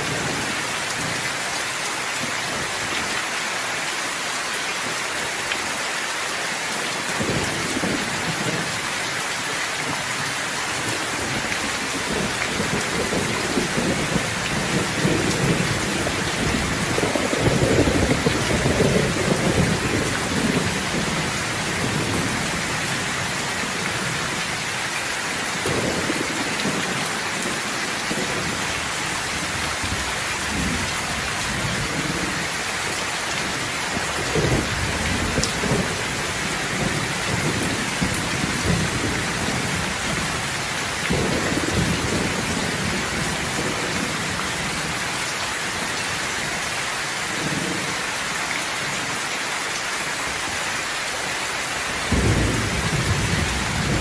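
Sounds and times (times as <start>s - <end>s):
heavy rain hissing: 0.0s - 54.0s
rolling thunder: 10.8s - 23.2s, 34.2s - 45.0s, 52.1s - 54.0s.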